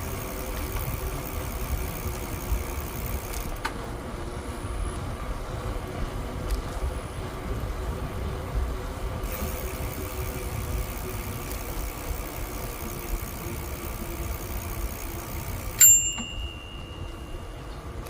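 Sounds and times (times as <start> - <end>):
wind and riding noise: 0.0 - 18.0
bicycle bell ding: 15.5 - 17.6.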